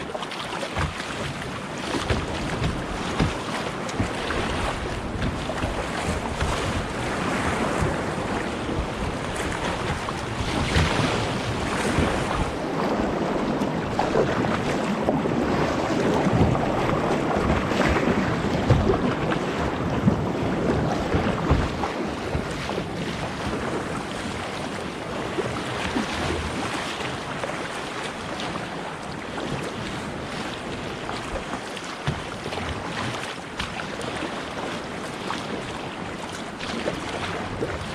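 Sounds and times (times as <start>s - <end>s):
water splashing around a kayak: 0.0s - 37.9s
wind buffeting the microphone: 0.8s - 27.6s.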